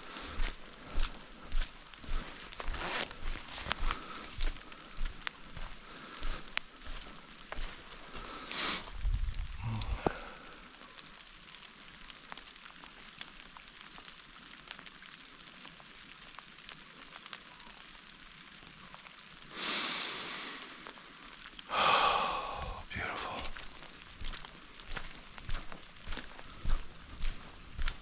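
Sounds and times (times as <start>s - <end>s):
light rain on leaves: 0.0s - 28.0s
breathy exhale: 8.2s - 9.0s, 9.6s - 10.7s, 19.5s - 20.9s, 21.7s - 23.5s.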